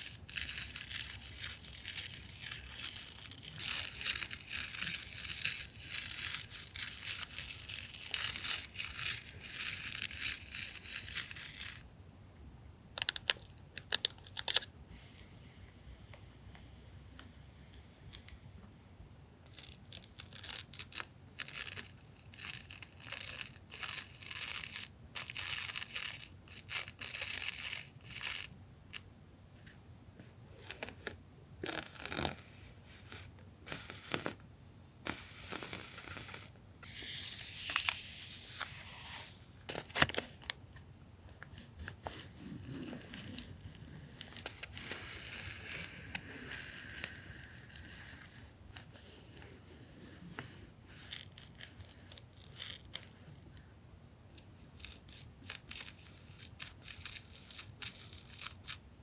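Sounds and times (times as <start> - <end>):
tape and paper tearing: 0.0 - 11.8, 19.5 - 28.5, 30.6 - 34.4, 35.1 - 40.6, 41.9 - 48.9, 51.0 - 53.2, 54.8 - 58.8.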